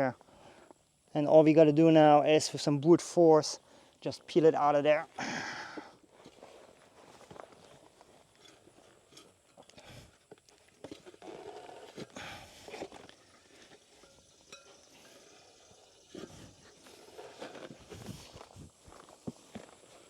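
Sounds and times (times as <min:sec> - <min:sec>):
rubber and metal scraping: 0:10.9 - 0:12.1, 0:16.1 - 0:18.7.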